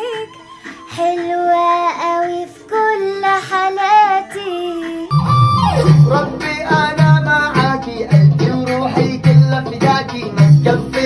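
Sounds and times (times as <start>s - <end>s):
pop song with sung melody: 0.0s - 11.0s
song with heavy beat and guitar: 5.0s - 11.0s.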